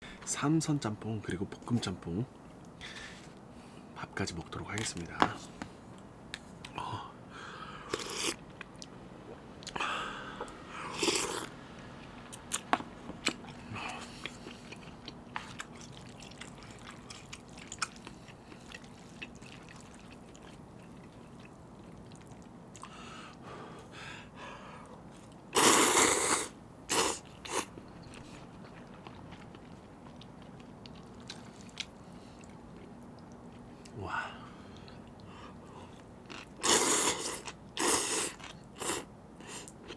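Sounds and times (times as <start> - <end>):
wet chewing and mouth smacks: 12.3 - 23.0, 26.9 - 34.0.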